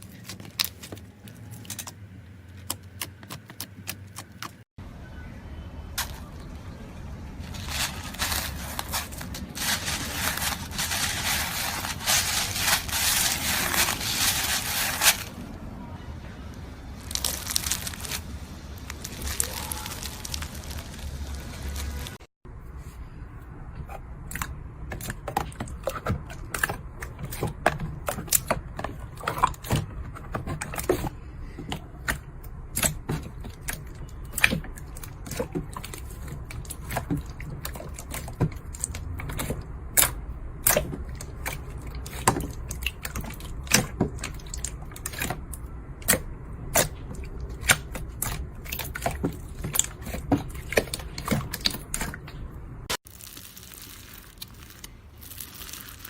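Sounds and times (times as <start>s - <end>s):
low handling rumble: 5.8s - 24.8s
slime squeezed by hand: 17.0s - 22.2s, 53.1s - 56.0s.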